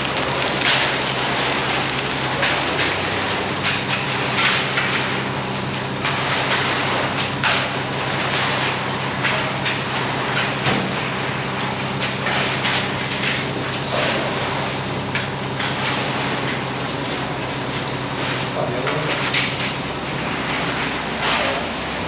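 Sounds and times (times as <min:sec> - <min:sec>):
diesel truck engine running: 0:00.0 - 0:08.0
wet concrete scraping and swishing: 0:00.0 - 0:22.0.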